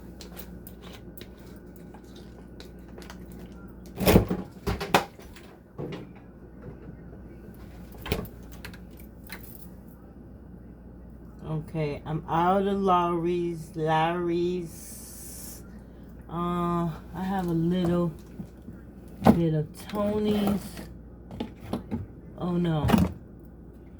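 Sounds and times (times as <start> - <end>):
containers and cupboard clunking: 0.3 - 9.4, 17.2 - 23.2.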